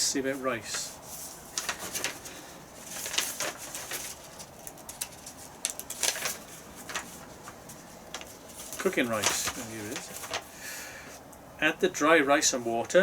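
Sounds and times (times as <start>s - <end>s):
paper pages flipping: 0.6s - 10.5s.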